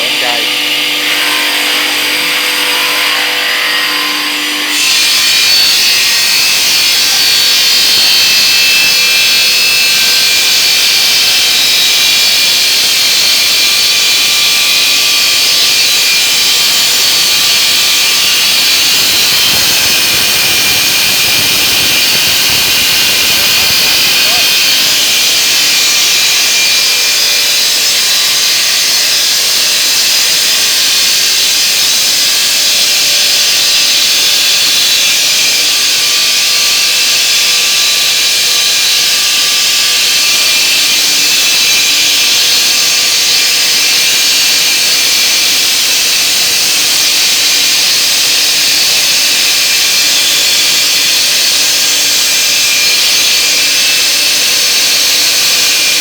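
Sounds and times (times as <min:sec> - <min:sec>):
stone-cutting saw cutting stone: 0:00.0 - 0:56.0.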